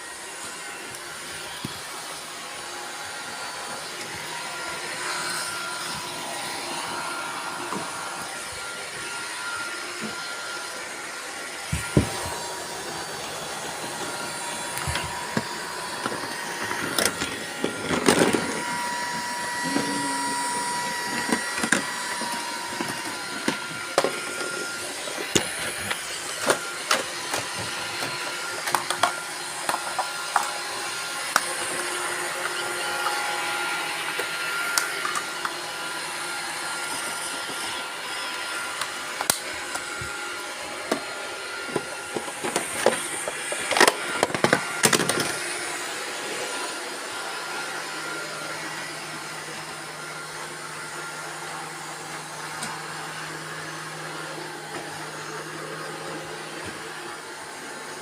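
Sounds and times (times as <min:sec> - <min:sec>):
robot vacuum motors whirring: 0:00.0 - 0:58.0.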